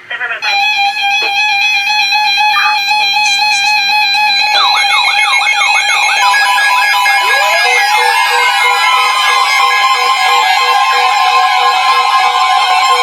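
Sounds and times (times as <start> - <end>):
held steady tones: 0.0 - 13.0
fast repeating warbling figure: 2.4 - 8.8.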